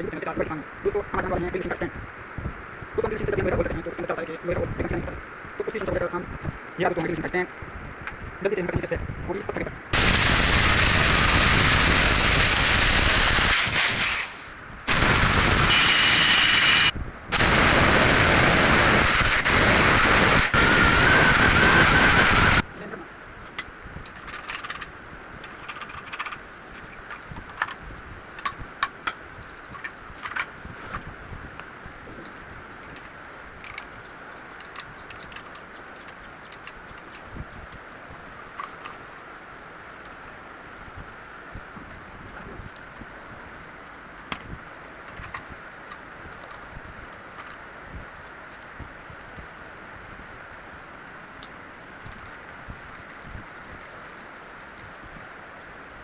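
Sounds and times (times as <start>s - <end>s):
steady hiss: 0.0s - 24.0s
electric drill rattling: 10.0s - 22.6s.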